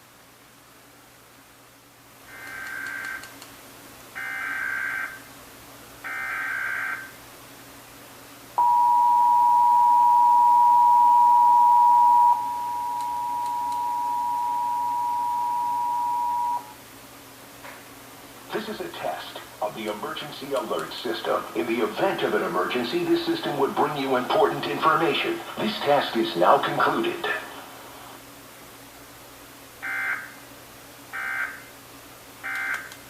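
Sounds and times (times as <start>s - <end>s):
loud steady dual tone: 8.5s - 17.4s, 18.5s - 31.8s
digital data tones: 9.7s - 16.7s.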